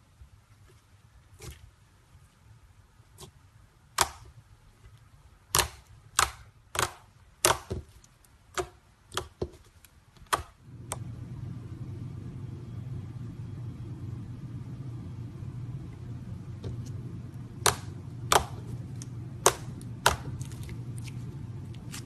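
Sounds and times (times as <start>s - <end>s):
steady low rumble: 10.6s - 22.0s.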